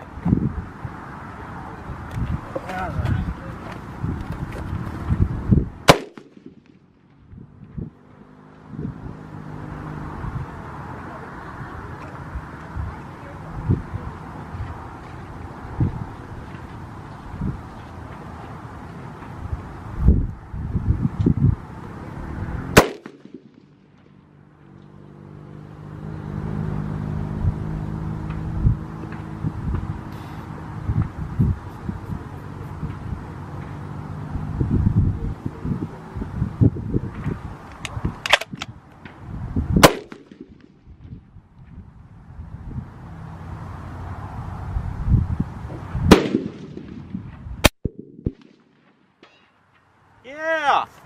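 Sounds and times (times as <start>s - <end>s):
loud rifle gunshot with echo: 5.8s - 6.8s, 22.8s - 23.6s, 39.8s - 40.7s, 46.1s - 47.1s.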